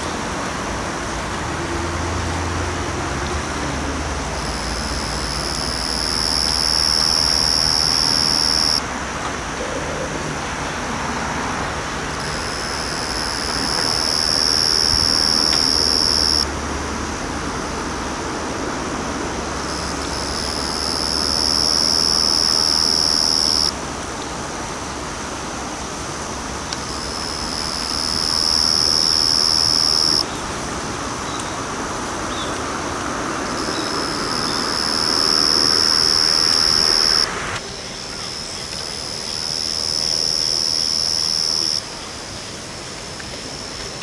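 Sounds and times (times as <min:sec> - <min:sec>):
faint high insect tone: 0:04.0 - 0:08.9, 0:12.2 - 0:17.0, 0:19.4 - 0:23.8, 0:25.7 - 0:30.6, 0:32.2 - 0:44.0
cricket singing high calls: 0:04.4 - 0:08.8, 0:12.2 - 0:16.6, 0:19.6 - 0:23.8, 0:26.4 - 0:30.4, 0:33.4 - 0:42.1.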